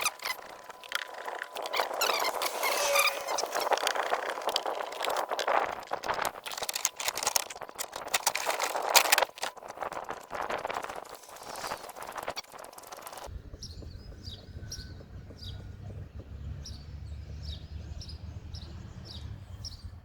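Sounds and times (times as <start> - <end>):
bolts and nuts clicking and rattling: 1.5 - 11.0
brief squeak: 1.7 - 3.7.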